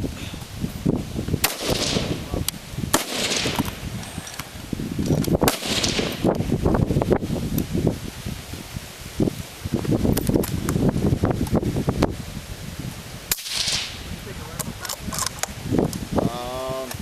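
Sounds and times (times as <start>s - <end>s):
rifle shots with echo: 1.4s - 2.2s, 2.9s - 3.8s, 5.4s - 6.3s, 13.3s - 14.0s.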